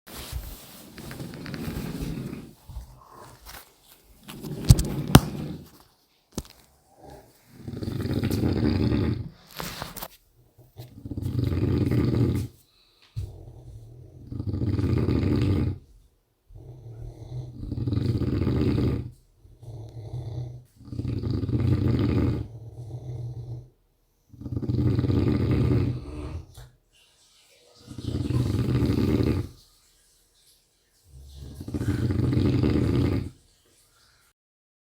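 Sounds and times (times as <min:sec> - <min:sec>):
person snoring loudly: 0:07.0 - 0:09.4, 0:11.0 - 0:12.5, 0:13.3 - 0:15.8, 0:16.6 - 0:23.7, 0:24.4 - 0:26.5, 0:28.0 - 0:29.6, 0:31.6 - 0:33.4
breathing: 0:12.4 - 0:14.0, 0:31.3 - 0:32.4.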